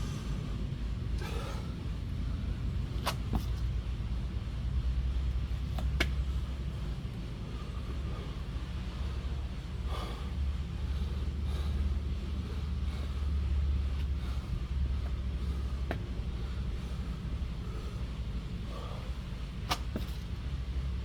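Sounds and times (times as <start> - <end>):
steady low rumble: 0.0 - 21.0
person breathing hard: 1.1 - 2.7, 7.3 - 19.6.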